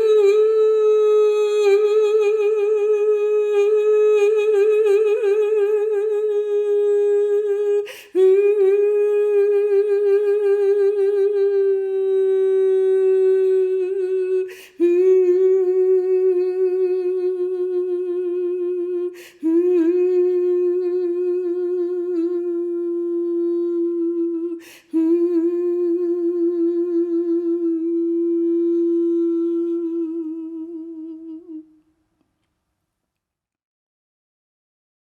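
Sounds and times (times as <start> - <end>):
woman singing long notes: 0.0 - 31.8
woman breathing in: 7.8 - 8.2, 14.5 - 14.8, 19.2 - 19.4, 24.6 - 24.9.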